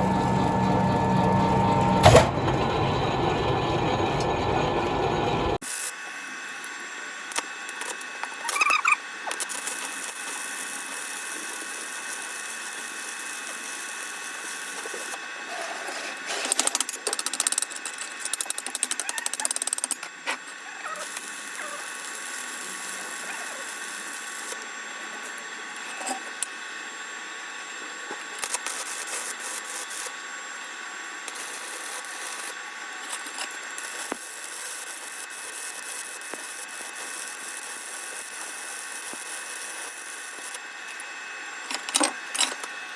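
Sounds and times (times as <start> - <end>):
machine hum: 0.0 - 5.6.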